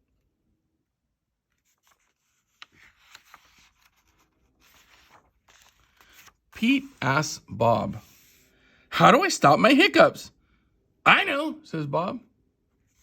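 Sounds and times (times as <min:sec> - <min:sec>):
book page turning: 0:01.5 - 0:07.2.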